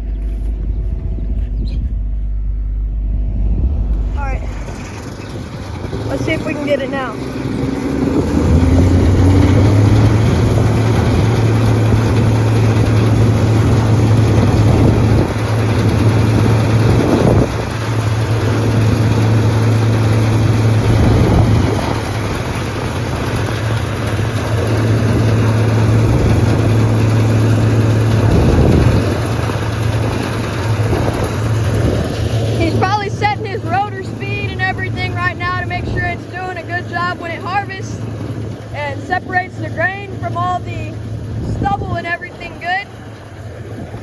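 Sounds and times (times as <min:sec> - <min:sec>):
combine harvester running: 0:00.0 - 0:44.0.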